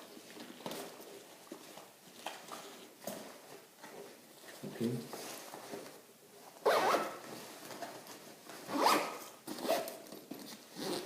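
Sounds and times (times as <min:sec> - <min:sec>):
zipper being pulled: 0:06.6 - 0:07.2, 0:08.7 - 0:10.0, 0:10.7 - 0:11.0.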